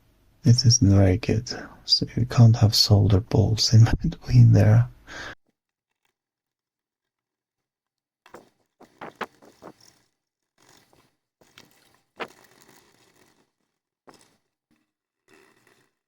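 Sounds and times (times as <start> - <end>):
scraping and handling noises: 5.4 - 16.0.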